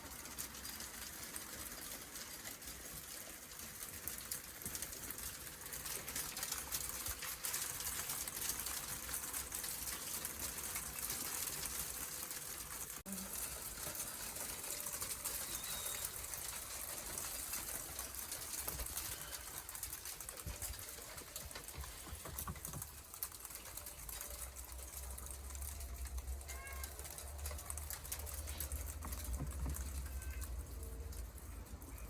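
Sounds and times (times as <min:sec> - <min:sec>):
hailstones pattering: 0:00.0 - 0:32.0
bird chirps: 0:15.3 - 0:16.2.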